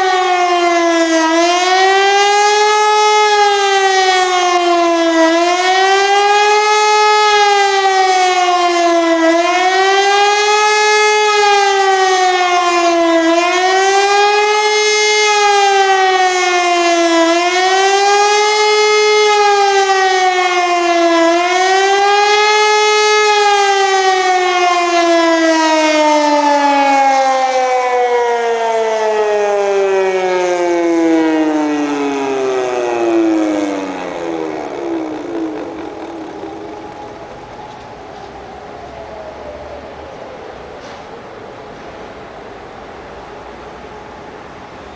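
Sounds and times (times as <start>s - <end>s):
wailing siren: 0.0s - 44.9s.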